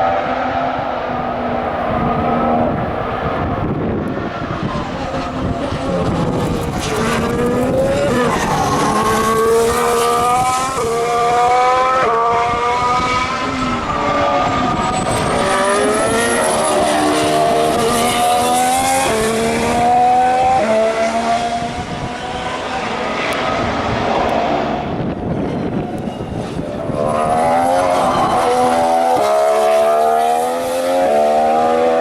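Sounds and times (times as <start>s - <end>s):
racing car engines at speed: 0.0s - 32.0s.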